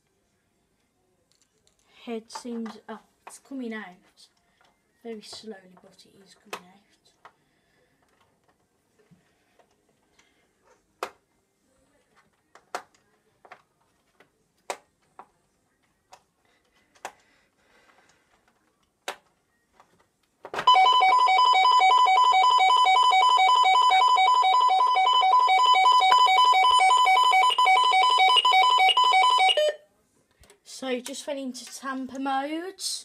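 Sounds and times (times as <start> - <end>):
pulsing electronic alarm siren: 20.7 - 29.8.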